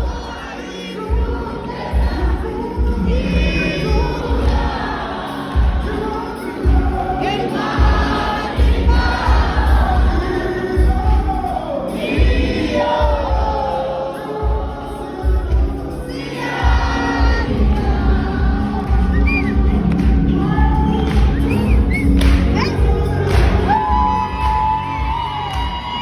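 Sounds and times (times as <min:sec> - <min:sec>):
band with pulsing bass: 0:00.0 - 0:26.0
choir singing: 0:00.0 - 0:26.0
crowd singing along: 0:00.0 - 0:26.0.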